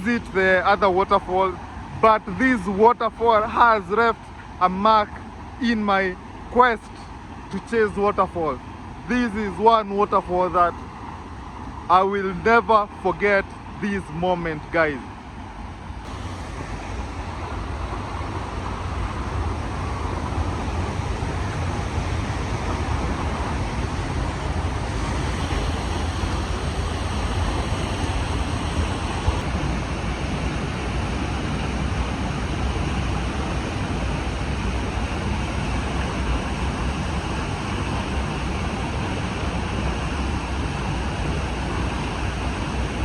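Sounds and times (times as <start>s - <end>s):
waterfall rushing into pool: 16.1s - 43.0s.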